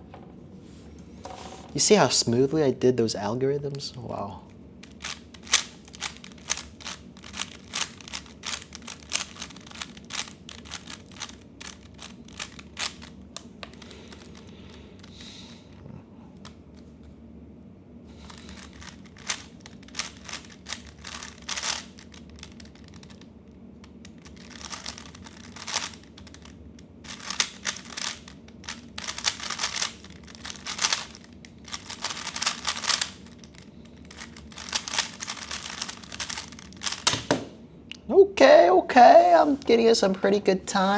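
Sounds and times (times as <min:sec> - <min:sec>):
puzzle cube clicking: 0:04.8 - 0:15.2, 0:18.3 - 0:23.2, 0:24.0 - 0:26.5, 0:27.1 - 0:37.5.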